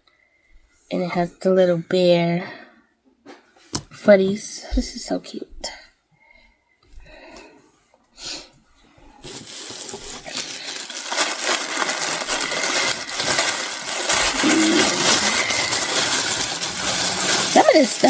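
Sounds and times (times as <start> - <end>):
plastic packaging crinkling: 9.2 - 18.0.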